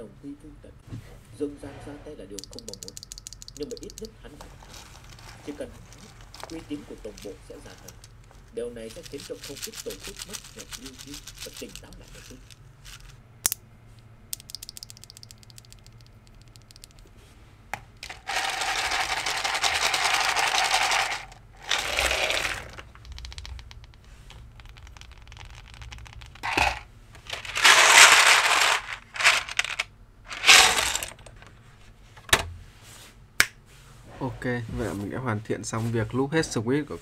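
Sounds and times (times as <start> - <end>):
small plastic clicks: 2.4 - 4.1, 14.3 - 17.1, 22.9 - 26.4
rustling and scraping: 4.2 - 13.2, 18.0 - 23.0, 24.0 - 36.1.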